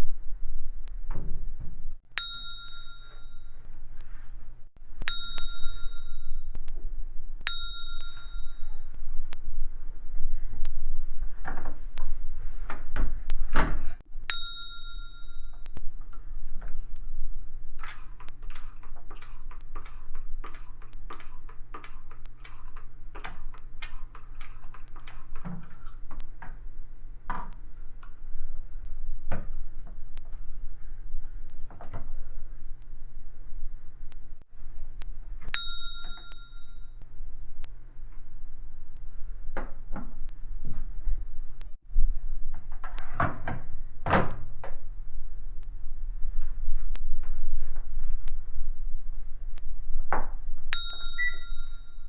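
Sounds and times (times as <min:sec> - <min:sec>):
electronic control panel beep: 0:51.1 - 0:51.8.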